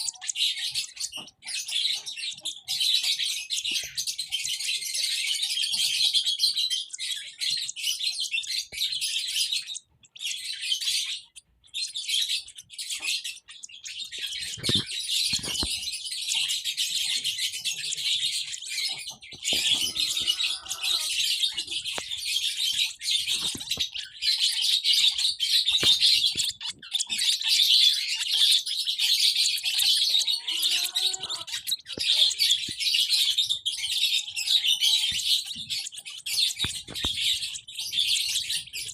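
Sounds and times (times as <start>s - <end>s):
lovebirds chirping: 0.0s - 38.9s
lower bird calls: 12.0s - 24.8s, 29.4s - 37.7s.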